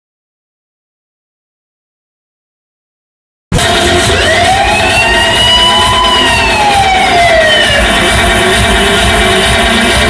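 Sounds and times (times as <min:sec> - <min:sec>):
pulsing bass beat: 0:03.5 - 0:10.0
siren-like wail falling: 0:03.6 - 0:08.2.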